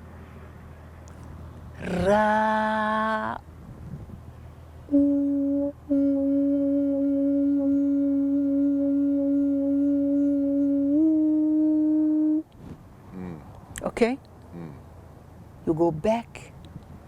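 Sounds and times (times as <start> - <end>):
woman singing a long vowel tone: 2.0 - 3.4, 4.9 - 12.5.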